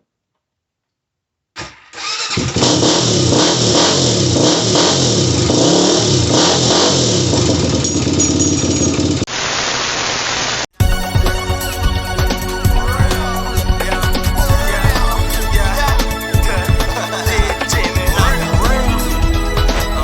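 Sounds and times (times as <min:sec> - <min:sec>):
engine revving: 0:02.0 - 0:07.8, 0:11.2 - 0:20.0.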